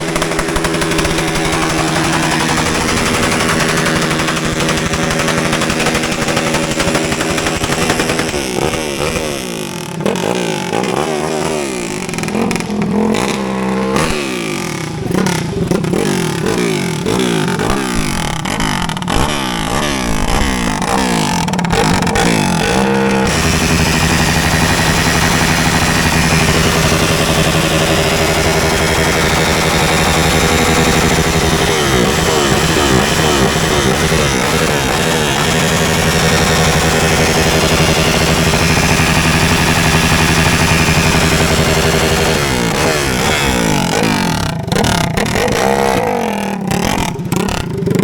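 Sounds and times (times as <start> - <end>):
motorcycle engine revving: 0.0 - 48.0.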